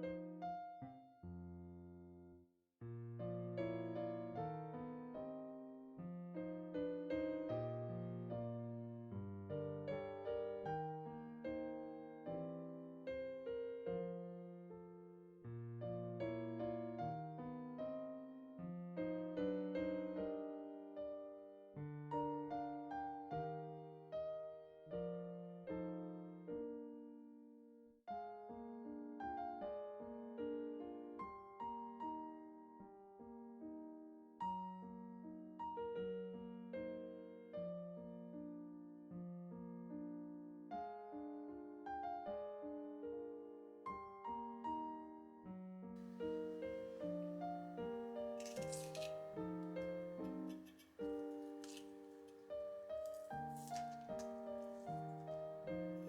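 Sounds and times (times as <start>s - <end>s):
solo piano music: 0.0s - 56.0s
faint kitchen rustle: 46.0s - 56.0s.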